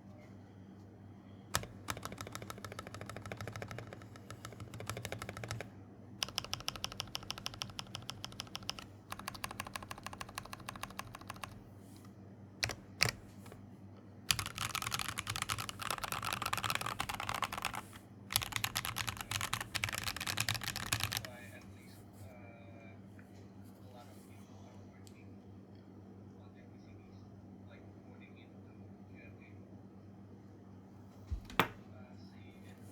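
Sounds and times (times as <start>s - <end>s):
mechanical keyboard typing: 1.5s - 11.7s, 12.6s - 13.6s, 14.3s - 21.4s.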